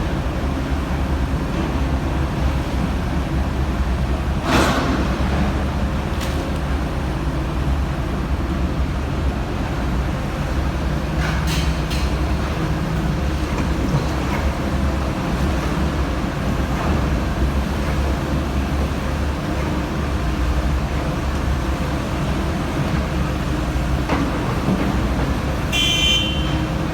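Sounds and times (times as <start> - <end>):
excavator diesel engine running: 12.2 - 26.9.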